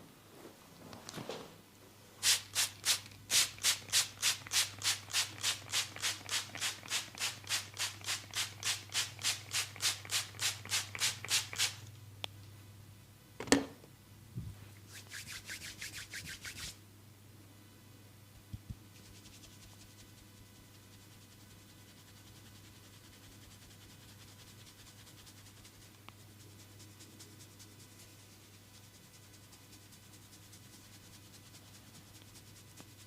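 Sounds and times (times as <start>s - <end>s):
hands rubbing over body: 14.9s - 16.8s, 18.4s - 21.8s.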